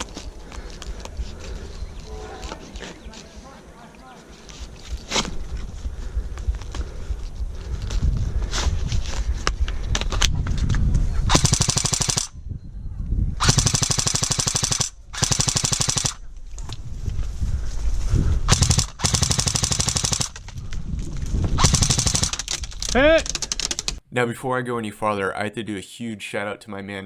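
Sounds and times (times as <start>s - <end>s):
airsoft gun full-auto bursts: 11.3s - 12.3s, 13.4s - 16.2s, 18.5s - 20.4s, 21.6s - 22.5s.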